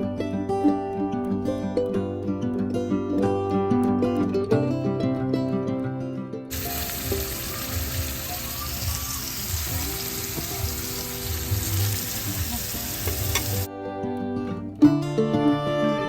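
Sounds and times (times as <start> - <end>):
background music: 0.0 - 16.0
food sizzling in hot oil: 6.5 - 13.7.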